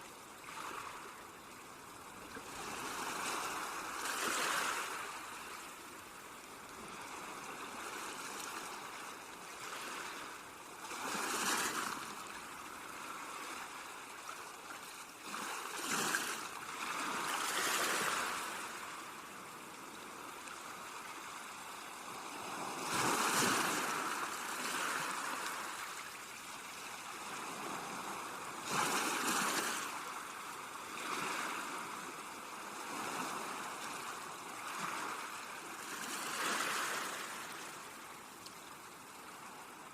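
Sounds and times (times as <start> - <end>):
sea waves washing onto beach: 0.0 - 39.9.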